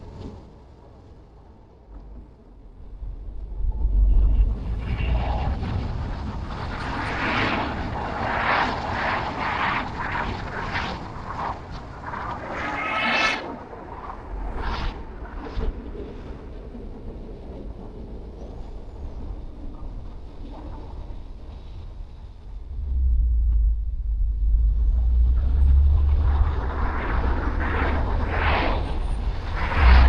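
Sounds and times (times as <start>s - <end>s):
car road and engine noise: 22.4s - 30.0s.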